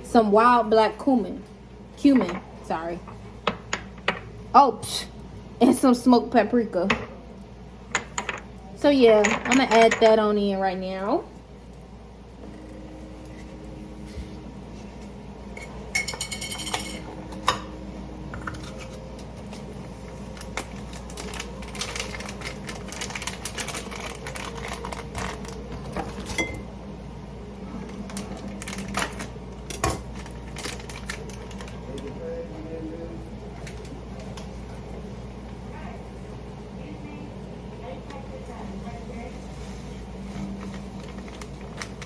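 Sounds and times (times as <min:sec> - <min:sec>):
low steady hum: 0:00.0 - 0:42.0
cookware clinking and knocking: 0:15.6 - 0:17.7.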